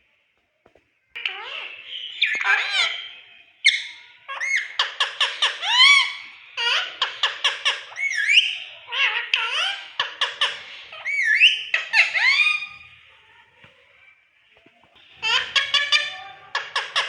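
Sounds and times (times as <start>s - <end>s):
parrot whistling and squawking: 1.2s - 12.9s, 15.1s - 17.0s.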